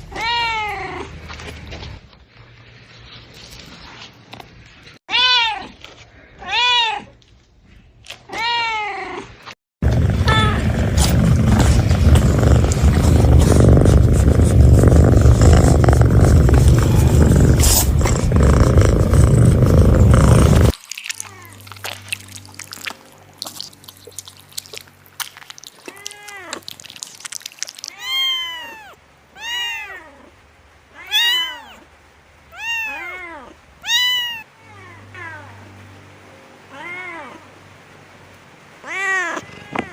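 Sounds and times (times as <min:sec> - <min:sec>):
cat meowing: 0:10.2 - 0:10.8, 0:27.9 - 0:30.3, 0:31.0 - 0:31.8, 0:32.5 - 0:35.7, 0:38.8 - 0:39.9.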